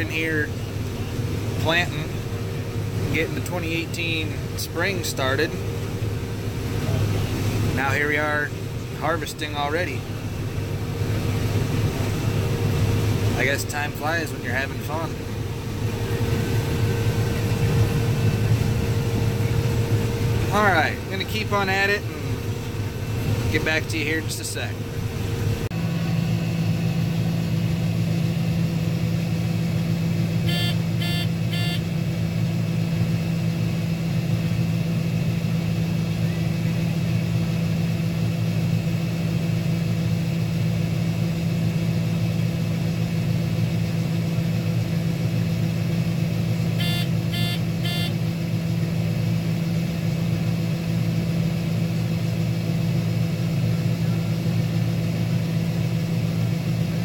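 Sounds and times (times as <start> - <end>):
combine harvester drone: 0.0 - 57.0
short electronic beeps: 30.4 - 31.9, 46.8 - 48.2.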